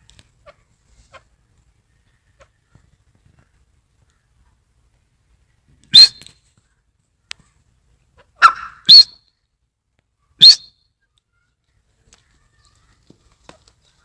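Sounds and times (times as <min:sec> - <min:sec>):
francolin calling: 0:06.0 - 0:06.3, 0:08.4 - 0:09.2, 0:10.4 - 0:10.8.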